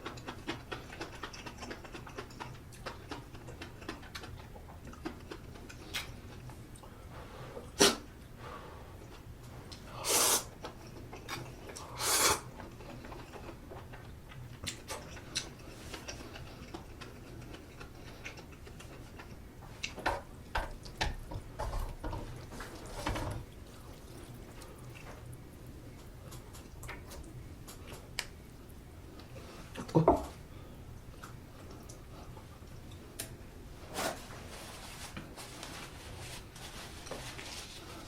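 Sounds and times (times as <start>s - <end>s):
wet chewing noises: 0.0s - 6.8s, 10.5s - 20.0s, 20.7s - 30.0s.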